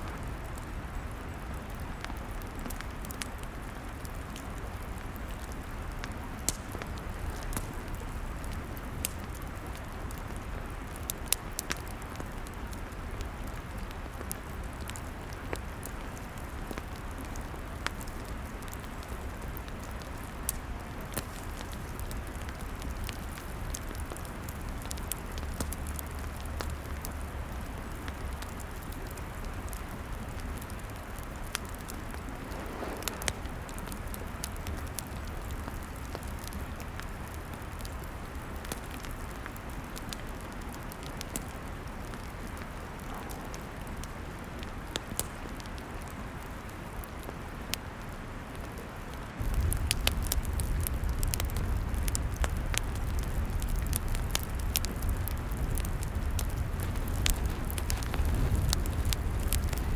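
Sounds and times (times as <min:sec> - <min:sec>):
log fire crackling: 0:00.0 - 0:59.9
low rumble: 0:31.8 - 0:34.9.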